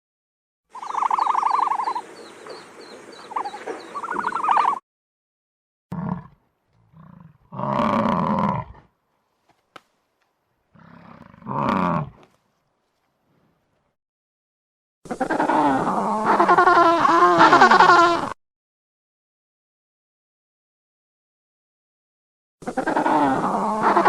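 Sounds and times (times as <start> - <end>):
animal trilling and chirping: 0.7 - 4.8.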